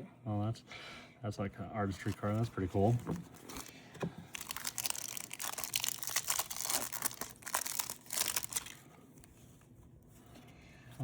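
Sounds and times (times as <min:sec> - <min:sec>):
plastic wrapper crinkling: 0:03.2 - 0:09.3.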